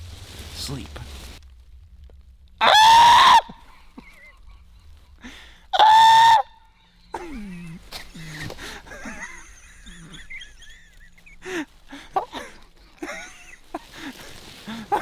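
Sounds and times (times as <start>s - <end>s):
loud honking calls: 2.6s - 3.6s.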